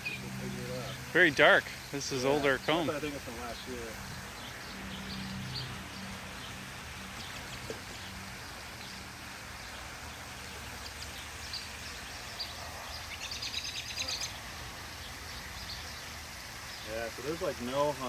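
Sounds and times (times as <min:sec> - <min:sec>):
honeybees humming: 0:00.0 - 0:18.0
small birds chirping: 0:00.0 - 0:18.0.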